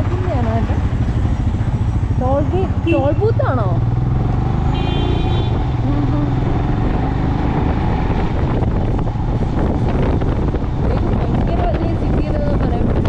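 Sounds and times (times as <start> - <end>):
motorcycle engine running: 0.0 - 13.0
horn toot: 4.7 - 5.8
wind buffeting microphone: 5.3 - 13.0.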